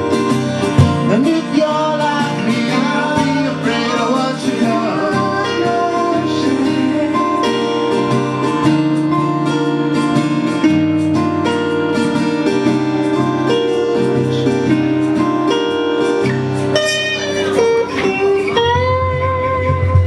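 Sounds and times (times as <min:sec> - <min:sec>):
plucked guitar notes: 0:00.0 - 0:20.0.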